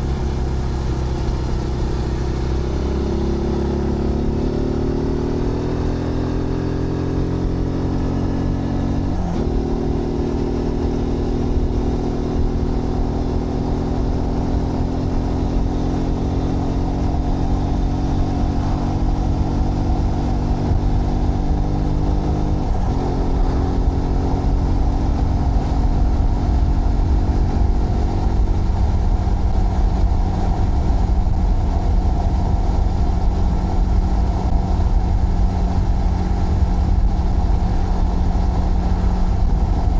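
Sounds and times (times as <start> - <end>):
motorcycle engine accelerating: 0.0 - 39.9
wind noise: 0.0 - 39.9.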